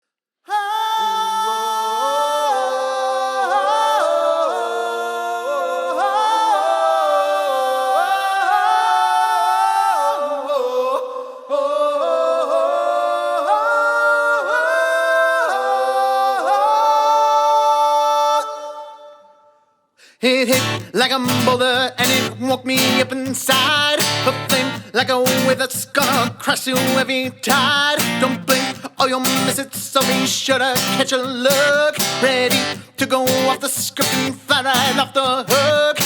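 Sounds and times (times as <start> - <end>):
a cappella vocal harmonies: 0.4 - 36.0.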